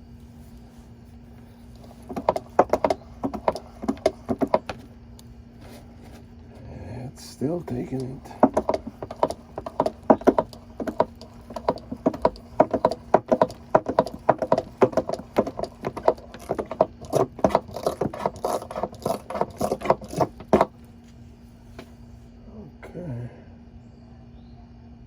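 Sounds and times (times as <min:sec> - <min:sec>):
hand pump clicking and rattling: 0:01.8 - 0:04.9, 0:07.7 - 0:20.8.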